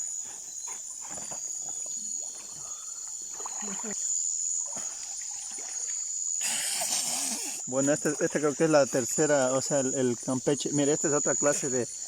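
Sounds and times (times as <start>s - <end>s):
crickets chirping: 0.0s - 12.0s
trickling water: 1.6s - 7.0s.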